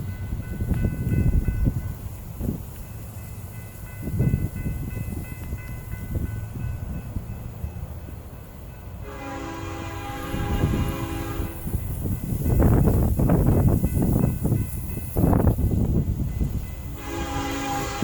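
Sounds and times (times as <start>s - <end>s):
locomotive air horn: 9.0s - 11.9s, 17.0s - 18.0s.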